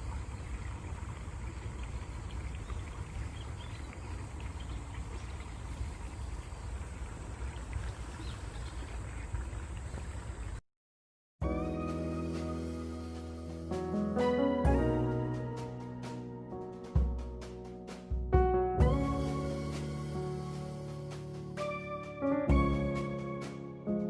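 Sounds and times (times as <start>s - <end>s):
stream water flowing: 0.0s - 10.6s
piano music: 11.4s - 24.0s.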